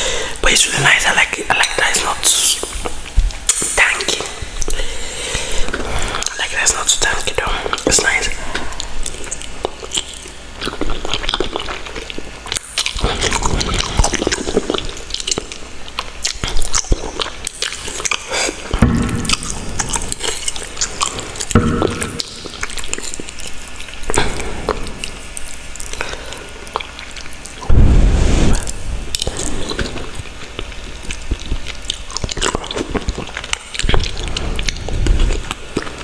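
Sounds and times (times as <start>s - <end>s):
wet chewing with mouth clicks: 0.8s - 27.7s, 28.6s - 36.0s
muffled low bursts: 27.6s - 30.8s.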